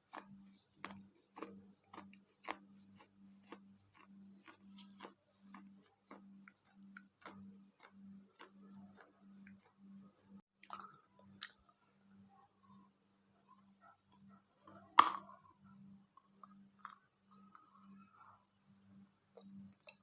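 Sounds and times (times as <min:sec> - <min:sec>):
crunching clay being chewed: 0:00.0 - 0:11.7, 0:18.9 - 0:20.0.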